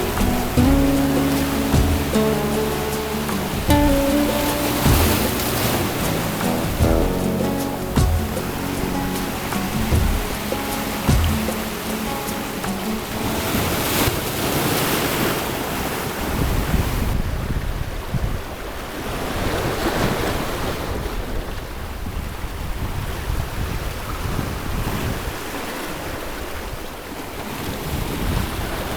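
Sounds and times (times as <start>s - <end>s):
waves breaking on shore: 0.0s - 28.9s
wind rumbling on microphone: 0.0s - 28.9s.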